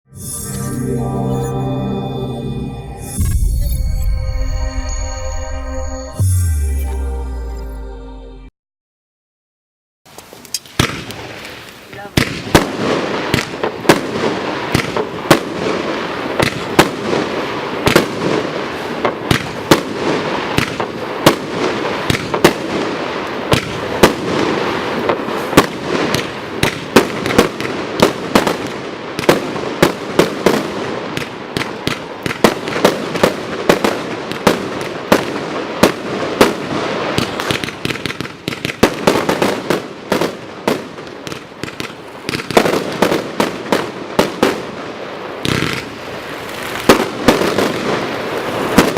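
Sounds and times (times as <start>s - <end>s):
firework crackle: 10.1s - 48.9s
firework bangs: 10.7s - 48.9s.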